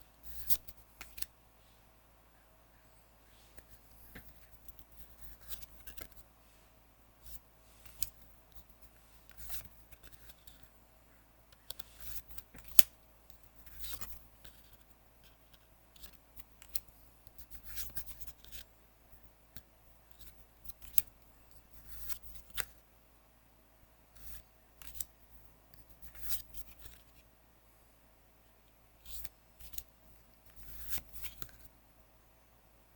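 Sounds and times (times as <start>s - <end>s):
cards clicking and rustling: 0.4s - 1.3s, 24.2s - 25.1s, 30.5s - 31.6s.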